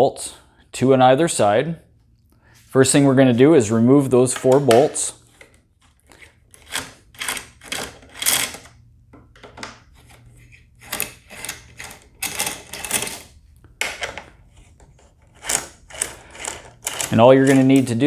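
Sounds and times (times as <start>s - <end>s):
hex tool unscrewing metal bolts: 15.4s - 18.0s.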